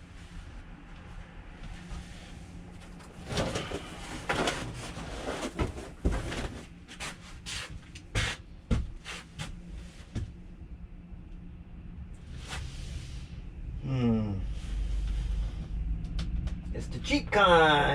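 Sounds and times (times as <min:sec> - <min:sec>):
knocks and clatters: 0:02.9 - 0:06.7
rustling: 0:03.0 - 0:07.2.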